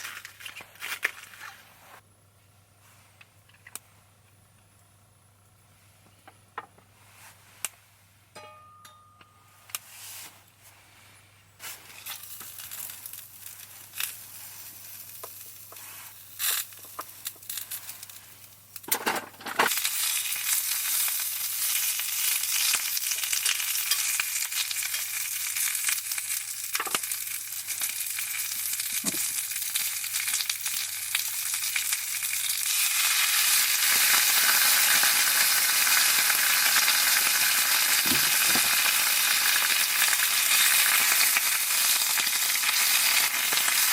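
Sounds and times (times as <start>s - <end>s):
food sizzling in a pan: 11.6s - 18.8s, 19.7s - 43.9s.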